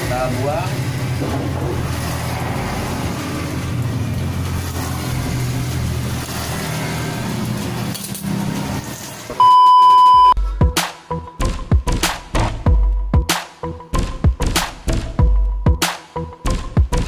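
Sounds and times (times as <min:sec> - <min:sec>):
low mechanical rumble: 0:00.0 - 0:08.7
loud electronic beep: 0:09.4 - 0:10.4.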